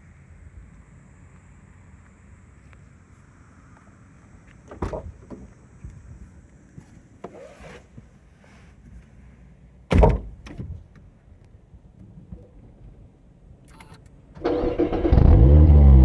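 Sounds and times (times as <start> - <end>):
car door shutting: 9.9 - 10.8
car door thud: 9.9 - 10.8.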